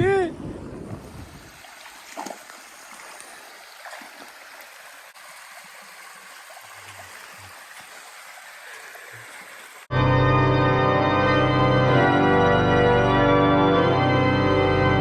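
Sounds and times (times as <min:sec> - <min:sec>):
running water hiss: 0:01.0 - 0:09.9.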